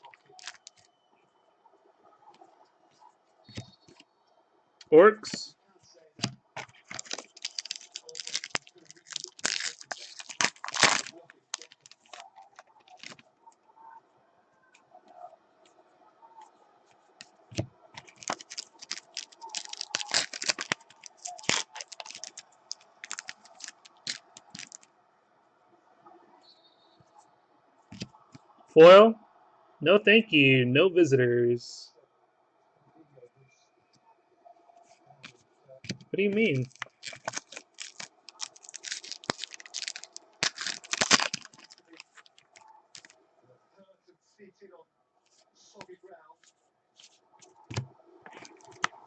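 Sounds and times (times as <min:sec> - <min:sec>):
wrappers crinkling and rustling: 0:00.0 - 0:00.9, 0:06.2 - 0:13.3, 0:17.5 - 0:24.9, 0:35.2 - 0:43.1, 0:47.0 - 0:49.0.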